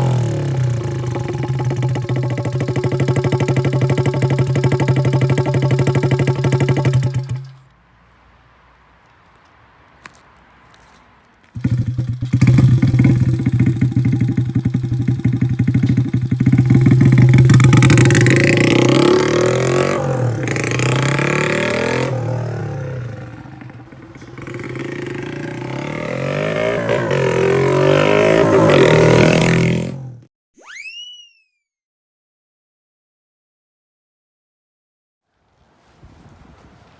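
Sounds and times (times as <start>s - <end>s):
motorbike engine revving: 0.0s - 7.6s, 11.6s - 30.3s.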